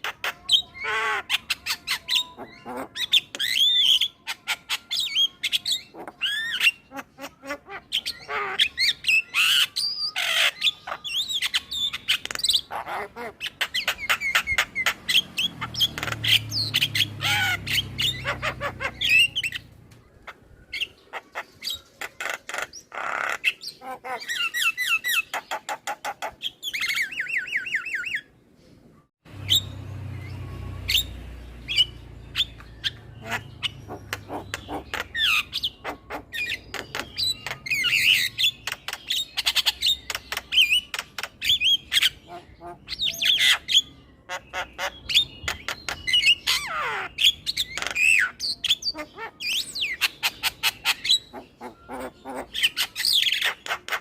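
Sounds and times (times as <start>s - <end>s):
myna bird chattering song: 0.0s - 28.3s, 29.3s - 54.0s.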